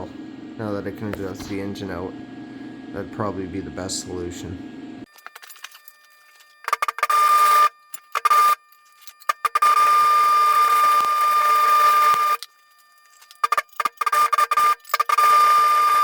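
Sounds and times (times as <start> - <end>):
electric arc welding buzz: 9.4 - 16.0.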